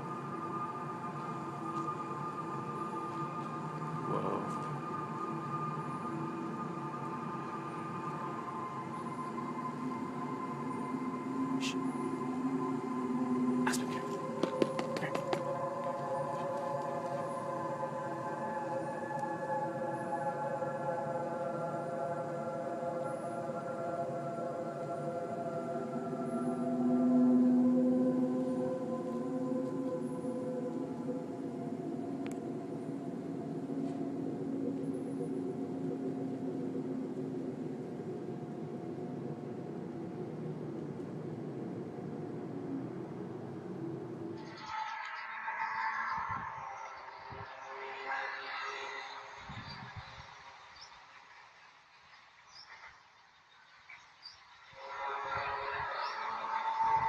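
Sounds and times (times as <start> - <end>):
low droning hum: 0.0 - 44.5
haze of noise: 0.0 - 57.0.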